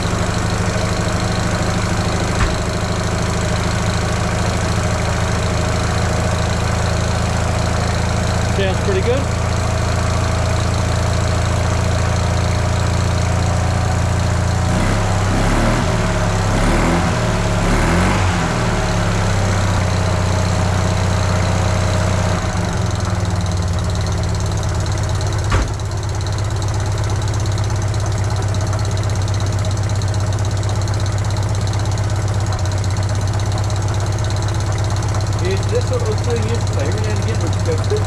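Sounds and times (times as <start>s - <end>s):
car engine idling and revving: 0.0s - 38.0s
sharp knock: 2.3s - 3.0s, 25.5s - 25.9s.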